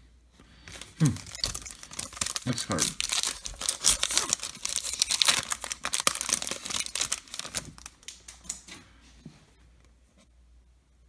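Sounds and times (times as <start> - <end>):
foil wrapper tearing and crinkling: 0.7 - 8.2.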